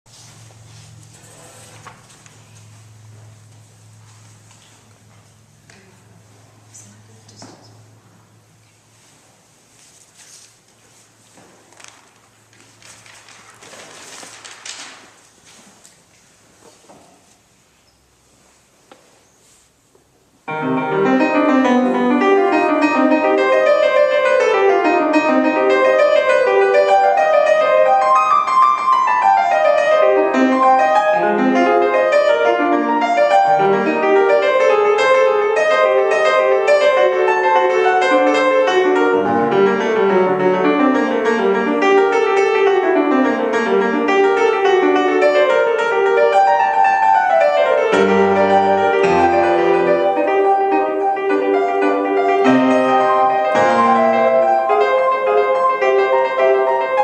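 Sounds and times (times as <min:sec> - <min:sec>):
solo piano classical piece: 0:19.4 - 0:57.0.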